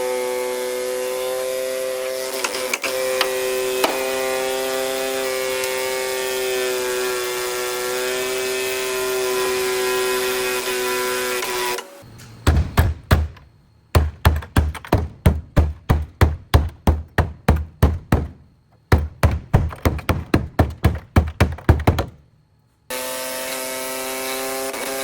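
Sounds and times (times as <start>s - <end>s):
rhythmic hammering: 12.4s - 22.2s.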